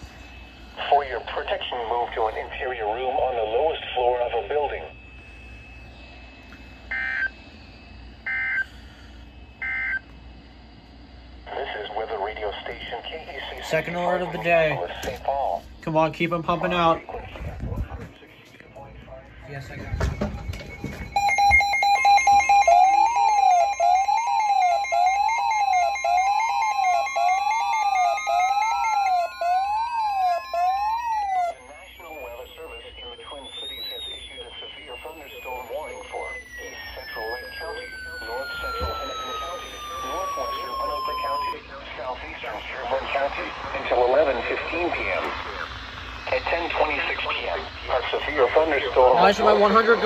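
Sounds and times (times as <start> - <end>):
alert data tone bursts: 0.0 - 14.9, 19.4 - 50.0
rapid electronic beeping: 0.0 - 15.0, 15.8 - 17.3, 18.7 - 50.0
siren-like wail: 0.0 - 15.0, 19.5 - 50.0
tone gliding upward: 21.1 - 41.6.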